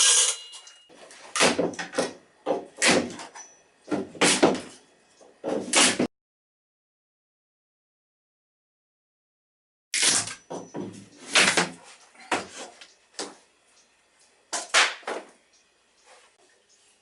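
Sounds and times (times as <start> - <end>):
wooden boards knocking and clattering: 1.3 - 4.7, 10.4 - 12.6.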